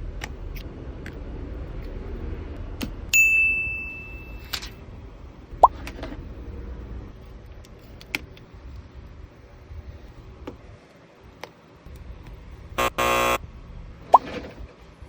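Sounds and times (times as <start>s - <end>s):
harsh buzz: 12.8s - 13.4s.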